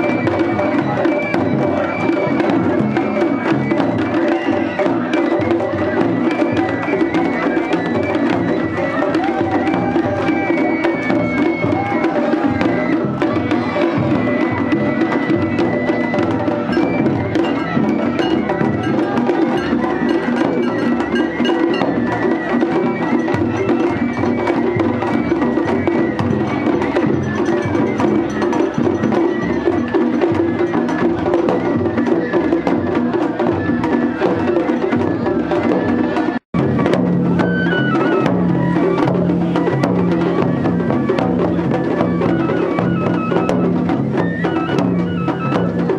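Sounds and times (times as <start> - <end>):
festival drums and percussion: 0.0 - 45.9
high held melody: 8.5 - 31.9.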